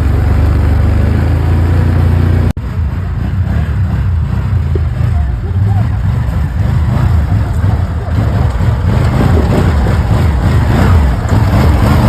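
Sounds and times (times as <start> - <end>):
atv engine running loudly: 0.0 - 12.0.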